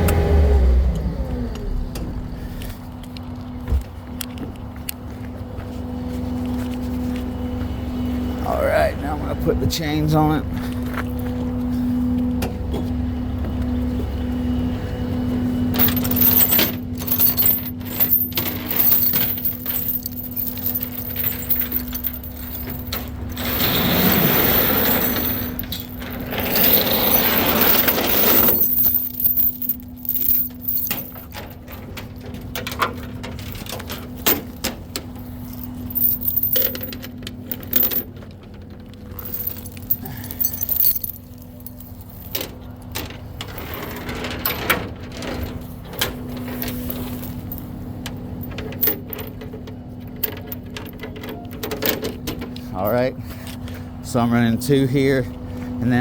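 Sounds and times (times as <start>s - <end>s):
steady engine hum: 0.0s - 56.0s
steel chains clanking and rattling: 15.7s - 53.2s.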